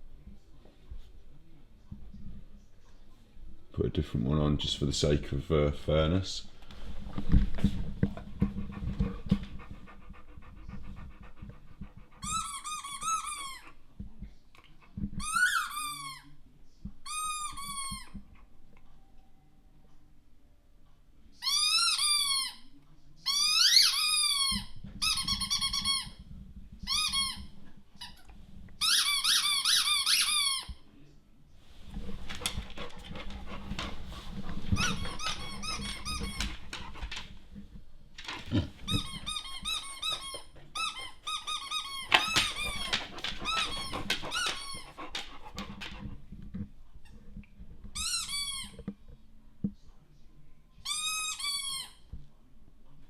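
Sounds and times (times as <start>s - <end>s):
squeaky dog toy: 12.3s - 13.7s, 15.2s - 16.2s, 21.4s - 26.2s, 28.8s - 30.8s, 38.9s - 44.9s, 48.0s - 48.8s, 50.8s - 52.1s.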